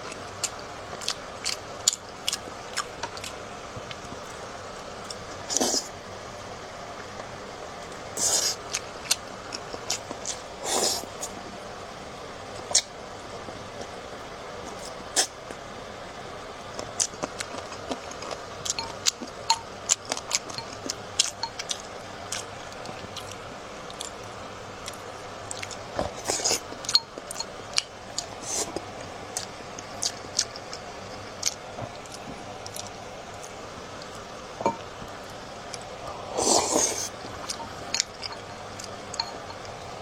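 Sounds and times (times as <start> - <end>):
utensils clinking on dishes: 18.6 - 21.8, 36.4 - 39.8.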